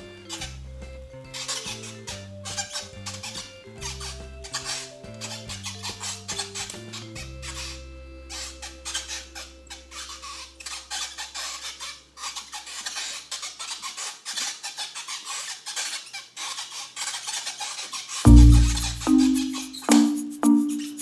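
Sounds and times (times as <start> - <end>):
low held music chord: 18.3 - 21.0.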